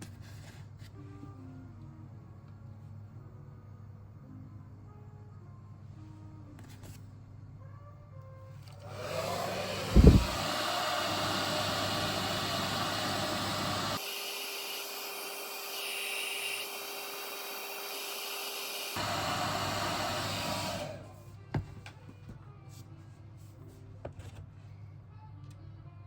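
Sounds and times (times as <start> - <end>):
electric hair clipper humming: 8.9 - 21.0.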